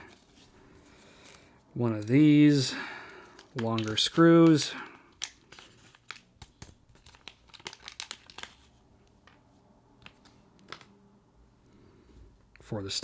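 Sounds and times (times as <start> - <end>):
plastic bag crinkling: 1.1 - 11.0.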